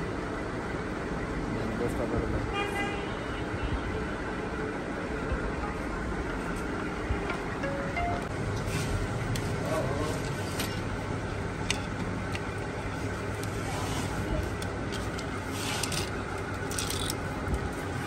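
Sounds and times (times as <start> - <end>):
motor vehicle hum: 3.9 - 18.0.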